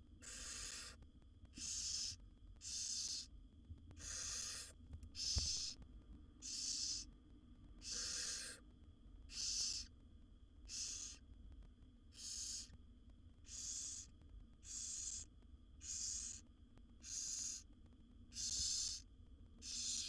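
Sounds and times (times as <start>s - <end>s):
owl chicks hissing begging calls: 0.2s - 1.0s, 1.6s - 3.3s, 4.0s - 5.8s, 6.4s - 7.1s, 7.8s - 8.6s, 9.3s - 9.9s, 10.6s - 11.2s, 12.1s - 12.8s, 13.4s - 16.4s, 17.0s - 17.7s, 18.3s - 19.0s, 19.6s - 20.0s.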